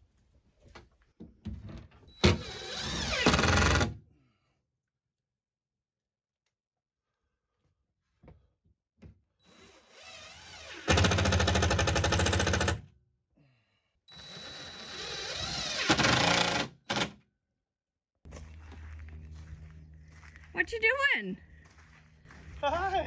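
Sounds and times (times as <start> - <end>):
power drill driving screws: 2.1 - 4.0, 9.4 - 12.8, 14.1 - 17.2
engine hum: 18.3 - 20.6, 21.4 - 23.0.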